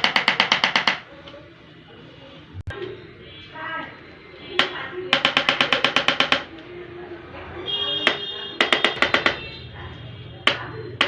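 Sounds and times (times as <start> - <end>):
chiropractic instrument clicking: 4.6 - 6.7, 8.1 - 9.4, 10.4 - 10.7.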